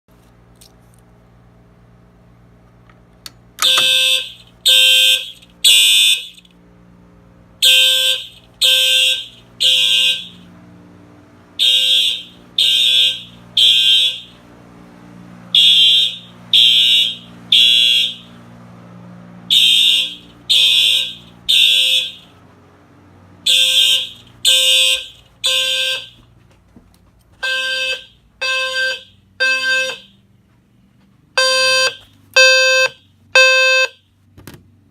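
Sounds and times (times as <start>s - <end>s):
fire alarm horns beeping: 3.6s - 6.5s, 7.6s - 10.6s, 11.6s - 14.8s, 15.4s - 18.5s, 19.4s - 22.4s, 23.4s - 26.4s, 27.3s - 30.3s, 31.3s - 34.1s.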